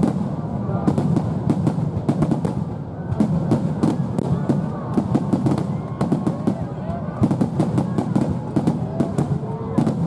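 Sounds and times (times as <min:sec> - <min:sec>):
fireworks bangs and crackles: 0:00.0 - 0:10.0.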